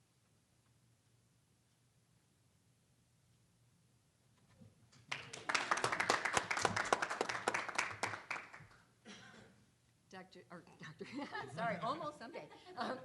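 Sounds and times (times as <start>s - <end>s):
small audience clapping: 5.0s - 8.9s.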